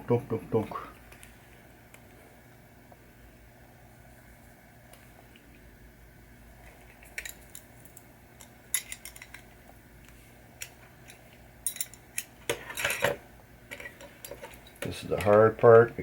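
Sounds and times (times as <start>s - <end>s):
metal parts and tools clinking: 8.7s - 9.4s, 10.6s - 14.6s.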